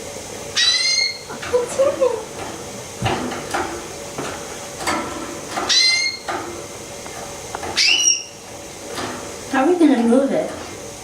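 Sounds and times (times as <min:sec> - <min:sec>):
bird chirp: 0:00.6 - 0:01.3, 0:05.7 - 0:06.3, 0:07.8 - 0:08.4.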